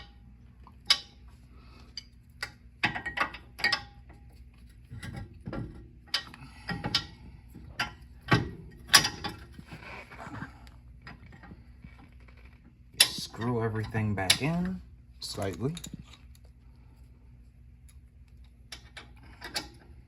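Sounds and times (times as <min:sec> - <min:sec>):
metallic clicks and clinks: 0:15.2 - 0:16.5.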